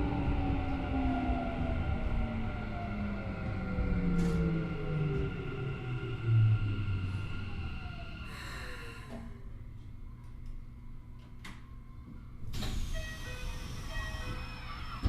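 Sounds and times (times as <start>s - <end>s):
train rushing: 0.0s - 9.1s
train rumble from inside: 0.0s - 15.0s.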